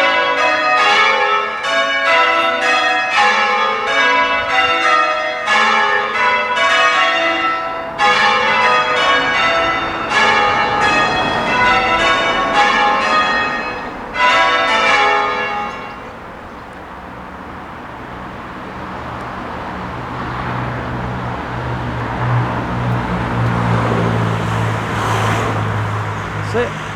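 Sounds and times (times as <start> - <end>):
church bells change ringing: 0.0 - 18.7
engine hum and road noise: 16.1 - 26.9.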